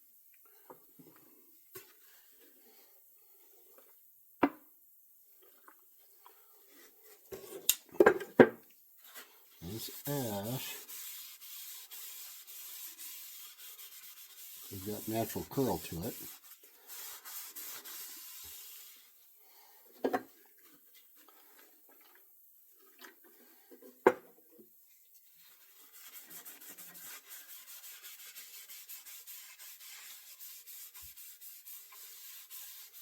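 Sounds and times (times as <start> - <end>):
hand rubbing wooden handle: 9.0 - 19.1, 25.5 - 33.0.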